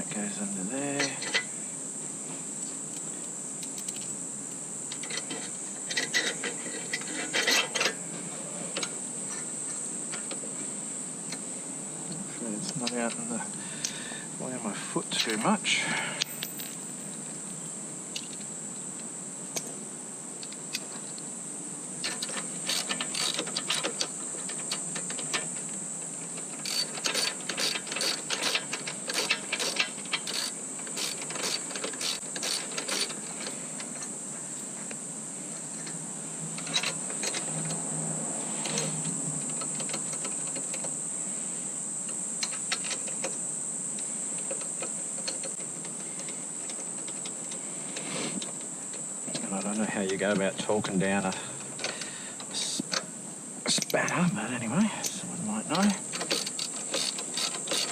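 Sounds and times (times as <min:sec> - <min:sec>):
ratcheting spanner clicking: 0:22.0 - 0:25.6, 0:26.4 - 0:34.1, 0:56.1 - 0:57.9.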